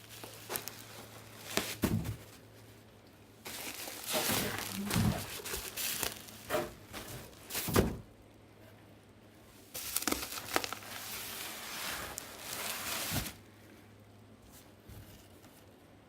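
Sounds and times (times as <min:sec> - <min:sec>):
bubble wrap crinkling: 0:00.0 - 0:07.9, 0:09.6 - 0:13.5.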